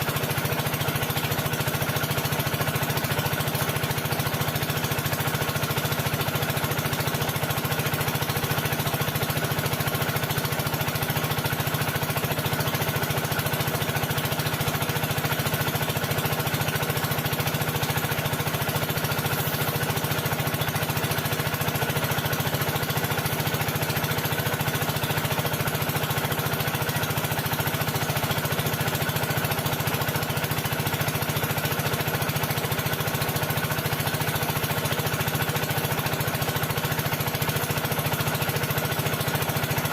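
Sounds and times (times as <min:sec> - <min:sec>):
machine motor running: 0:16.8 - 0:25.9, 0:35.5 - 0:39.9.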